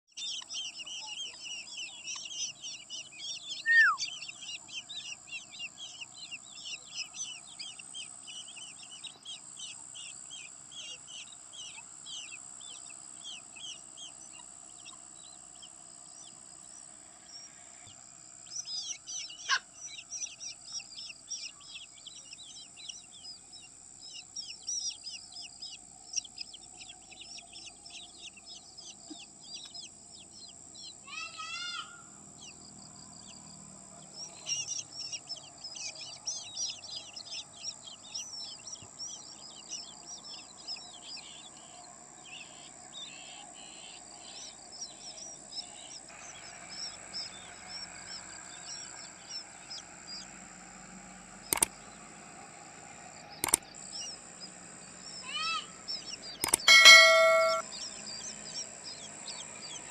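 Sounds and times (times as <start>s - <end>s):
baby birds chirping: 0.1s - 59.9s
whistle falling in pitch: 3.6s - 4.0s, 56.7s - 57.6s.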